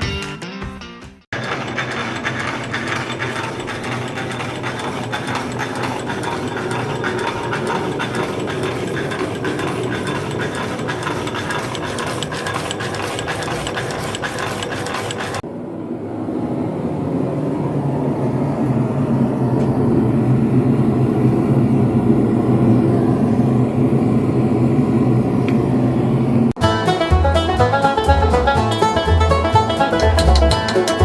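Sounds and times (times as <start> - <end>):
machine clicking rattle: 1.4 - 15.4, 29.8 - 31.0.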